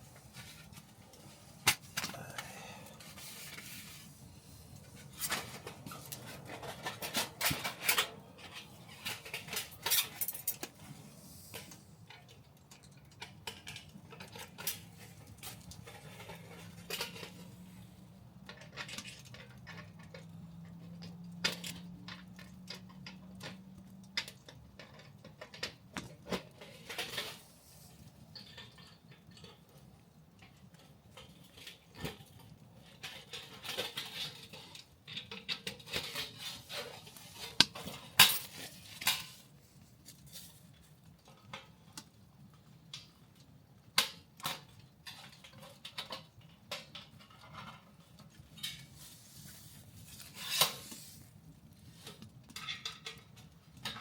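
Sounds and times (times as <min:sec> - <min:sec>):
metal utensils clinking: 0:04.9 - 0:10.9, 0:11.5 - 0:17.6, 0:33.0 - 0:39.4.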